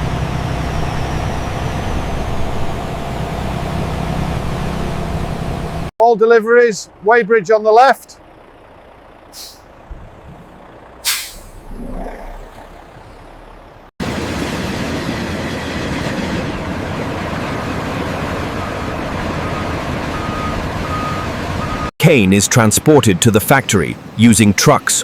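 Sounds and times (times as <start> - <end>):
road noise: 0.0 - 25.0
truck engine rumble: 0.0 - 25.0
air brake hiss: 9.4 - 9.7, 11.0 - 11.6.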